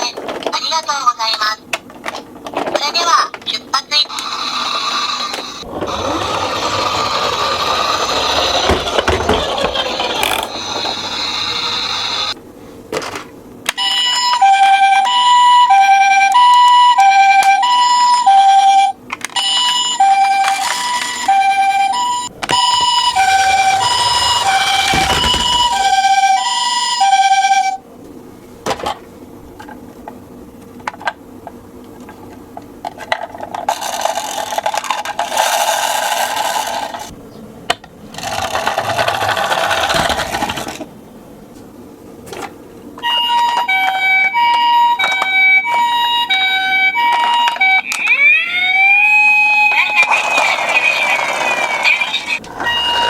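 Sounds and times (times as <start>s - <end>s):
toy cars rattling and rolling: 4.1s - 12.3s, 22.4s - 26.3s, 33.0s - 37.1s, 38.1s - 40.9s, 49.8s - 53.0s
two-tone ambulance siren: 13.8s - 27.8s, 43.0s - 50.2s, 52.5s - 53.0s.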